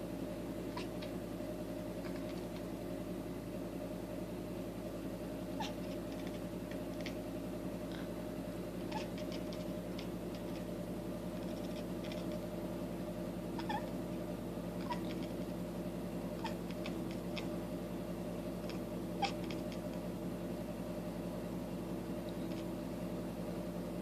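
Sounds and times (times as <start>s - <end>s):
low background hum: 0.0s - 24.0s
cat chirping: 0.7s - 1.2s, 5.6s - 7.2s, 8.9s - 10.6s, 11.4s - 12.4s, 13.6s - 14.0s, 14.8s - 15.4s, 16.4s - 17.5s, 18.6s - 19.9s.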